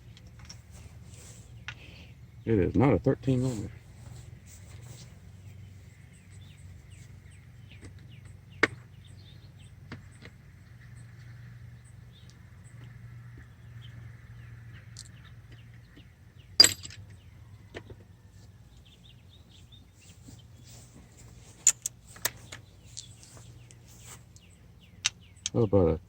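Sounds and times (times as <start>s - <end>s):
metal tools clinking: 16.6s - 17.0s, 20.6s - 23.5s.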